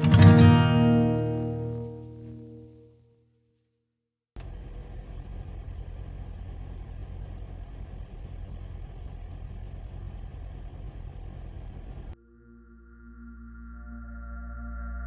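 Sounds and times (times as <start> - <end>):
car engine and road rumble: 4.4 - 12.2.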